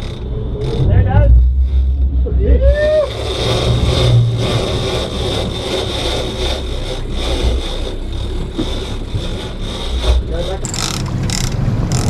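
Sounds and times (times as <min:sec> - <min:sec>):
outboard engine running: 0:03.1 - 0:12.0.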